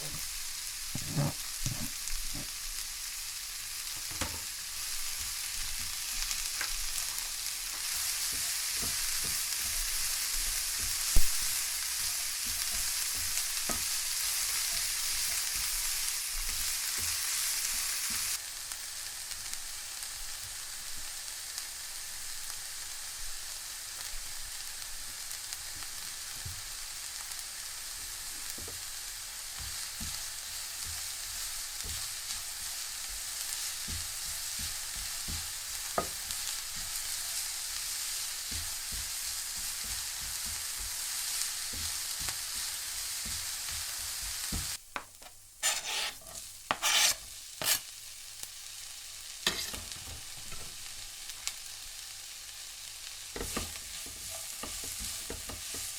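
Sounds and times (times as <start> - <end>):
meat sizzling in a pan: 0.0 - 55.9
utensil scraping a pan: 0.9 - 2.5, 45.6 - 47.9, 49.4 - 49.9.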